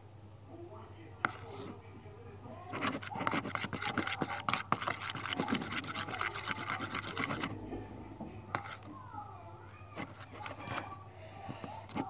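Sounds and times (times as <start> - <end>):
utensil stirring sticky slime: 1.2 - 1.8, 2.5 - 7.7, 8.4 - 12.0.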